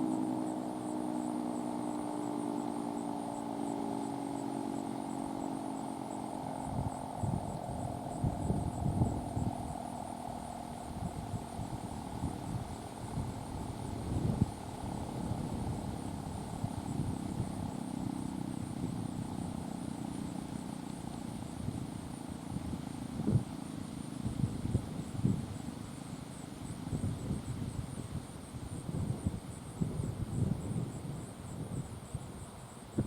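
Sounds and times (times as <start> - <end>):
faint low siren drone: 0.0 - 27.3
wind buffeting microphone: 6.6 - 19.8, 21.4 - 25.6, 26.6 - 33.0.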